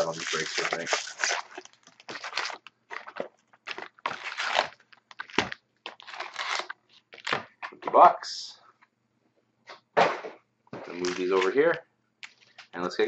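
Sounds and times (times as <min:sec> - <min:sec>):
cardboard and wrappers crinkling: 0:00.0 - 0:07.5.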